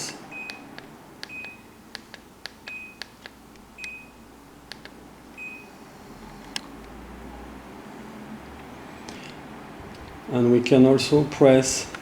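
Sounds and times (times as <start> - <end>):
air conditioner beeping: 0.0 - 12.0
remote button clicks: 0.4 - 4.0.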